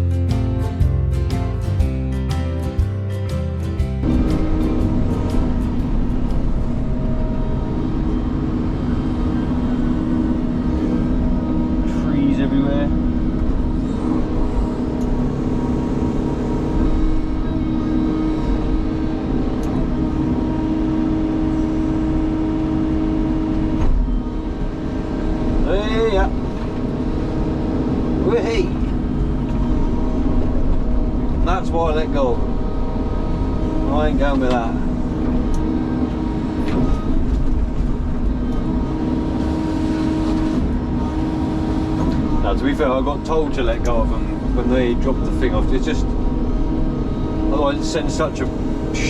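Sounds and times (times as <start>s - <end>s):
excavator engine hum: 0.0s - 49.0s
hydraulic whine: 4.0s - 49.0s.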